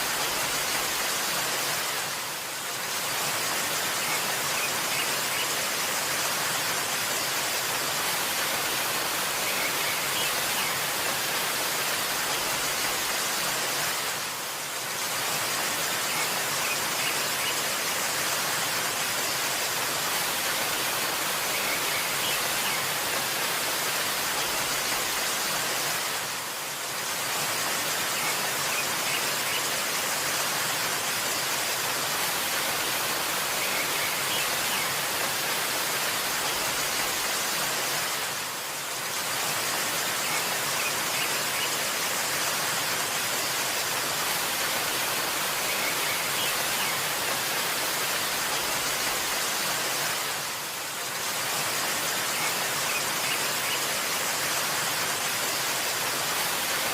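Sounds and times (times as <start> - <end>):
waterfall rushing: 0.0 - 56.9.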